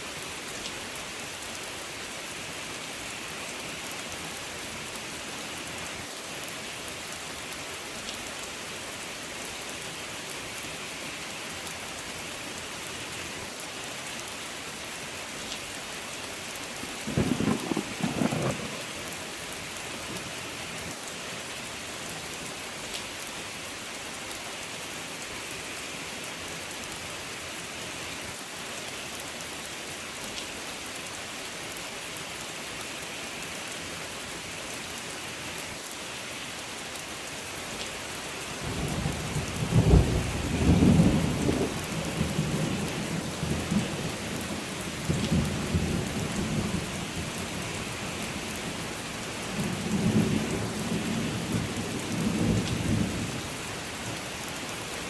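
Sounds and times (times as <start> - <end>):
steady rain falling: 0.0 - 55.0
thunder rumbling: 17.1 - 18.8.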